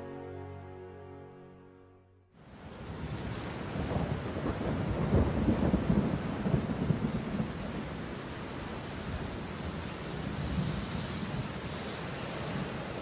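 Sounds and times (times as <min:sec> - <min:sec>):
rain hissing: 0:02.4 - 0:13.0
rolling thunder: 0:02.8 - 0:08.1.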